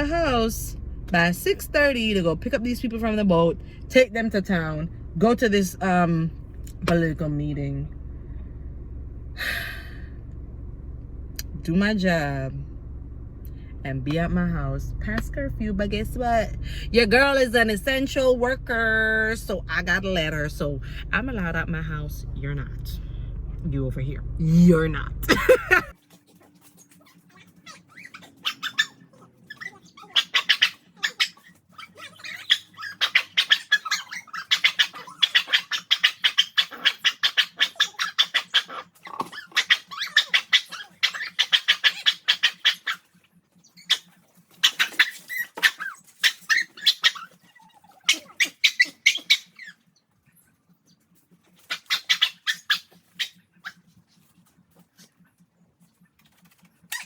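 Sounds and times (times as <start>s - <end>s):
dog whining and panting: 25.8s - 57.0s.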